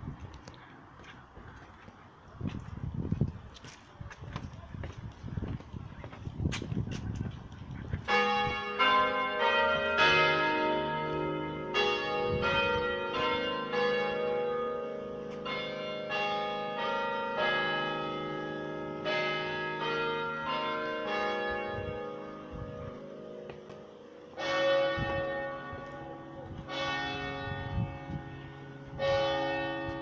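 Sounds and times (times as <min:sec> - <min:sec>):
church clock bells chiming: 0:08.0 - 0:30.0.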